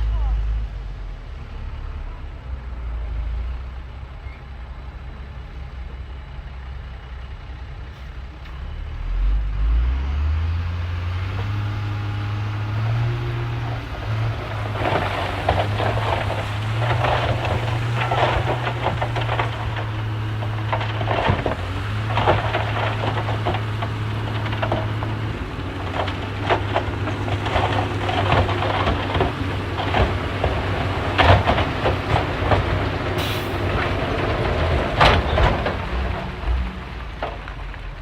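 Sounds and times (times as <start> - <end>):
bulldozer diesel engine running: 0.0 - 38.0
steel tracks clanking: 12.9 - 37.4.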